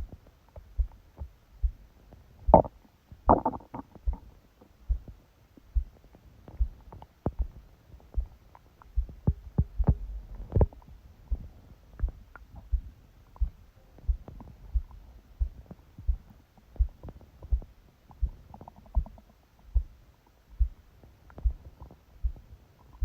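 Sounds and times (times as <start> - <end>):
heartbeat: 0.0 - 23.0
stomach growling: 2.5 - 4.3, 9.1 - 10.9, 13.4 - 19.4.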